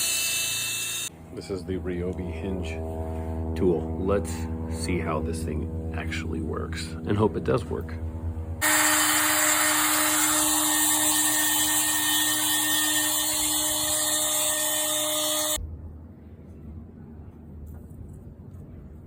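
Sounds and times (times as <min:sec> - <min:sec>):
power router whining: 0:00.0 - 0:01.1, 0:08.6 - 0:15.6.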